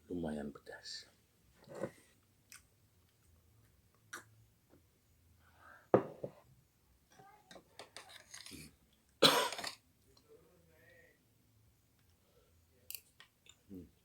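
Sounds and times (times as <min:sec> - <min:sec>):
man coughing: 0:09.2 - 0:09.7.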